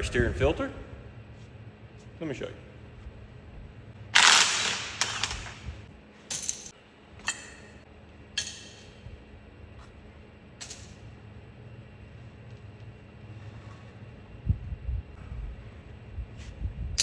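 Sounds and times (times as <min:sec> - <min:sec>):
faint steady hum: 0:00.0 - 0:17.0
metal tools clinking: 0:06.3 - 0:07.7.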